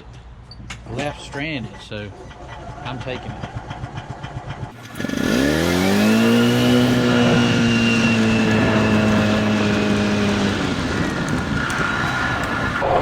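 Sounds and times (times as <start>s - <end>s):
small gasoline engine: 3.3s - 12.8s.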